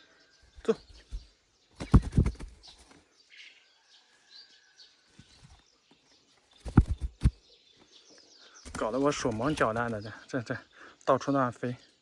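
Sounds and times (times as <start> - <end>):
faint bird chirps: 0.0 - 12.0
thumps and knocks: 1.8 - 2.6, 6.6 - 7.4.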